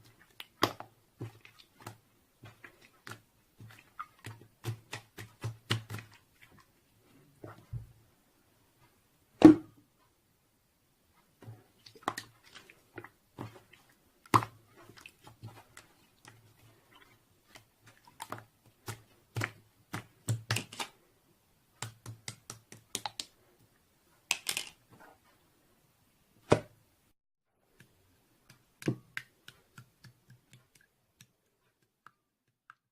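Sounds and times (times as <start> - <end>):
irregular clicks and taps: 27.7 - 32.9.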